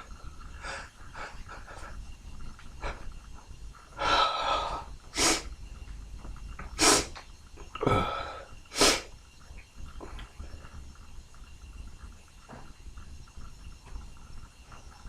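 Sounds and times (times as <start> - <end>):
long drawn-in breath: 0.6 - 2.0, 4.0 - 5.5, 7.9 - 9.1.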